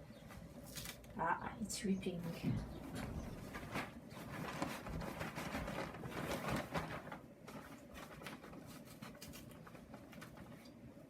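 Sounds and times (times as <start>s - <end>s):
paper bag tearing and rustling: 3.3s - 10.6s.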